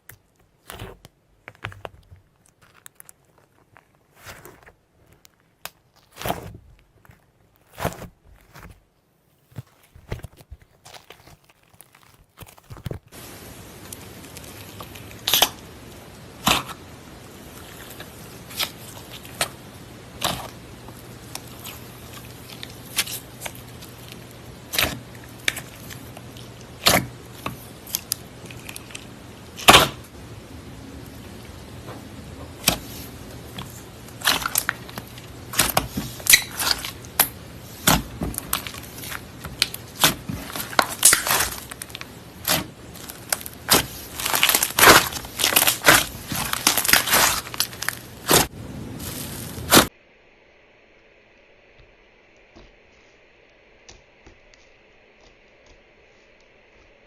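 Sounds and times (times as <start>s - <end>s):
slime popping and crackling: 10.0s - 30.1s, 32.5s - 49.9s.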